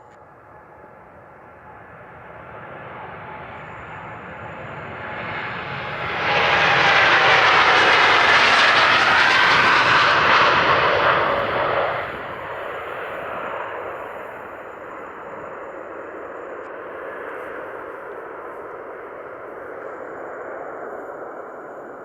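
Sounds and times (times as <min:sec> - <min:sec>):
jet engines roaring: 0:00.5 - 0:22.0.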